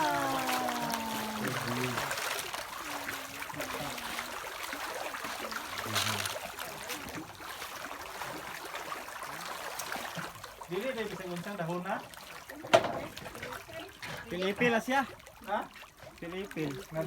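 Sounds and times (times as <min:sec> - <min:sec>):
faint voices: 0:00.0 - 0:04.4
water trickling and splashing: 0:00.0 - 0:17.0.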